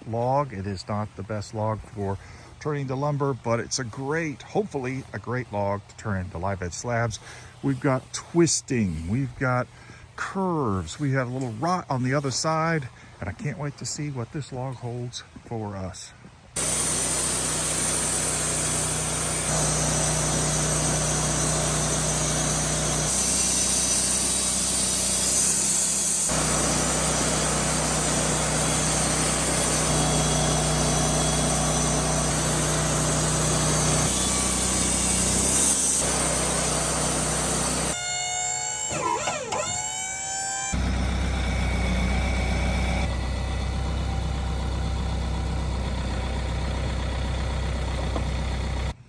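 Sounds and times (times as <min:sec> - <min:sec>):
saw blade cutting log: 0:16.6 - 0:43.1
wavering pitched sound: 0:38.0 - 0:43.0
low engine hum: 0:40.8 - 0:49.0.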